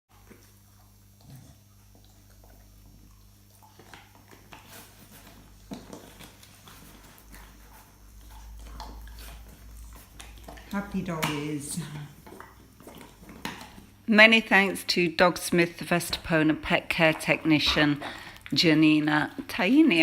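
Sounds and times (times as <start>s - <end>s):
dogs chewing: 0.1s - 20.0s
low steady hum: 0.1s - 20.0s.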